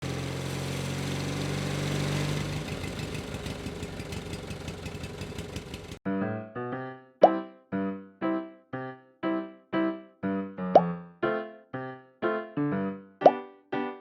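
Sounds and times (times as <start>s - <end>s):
motorcycle engine idling: 1.2s - 6.0s
light plucked music: 6.1s - 14.0s.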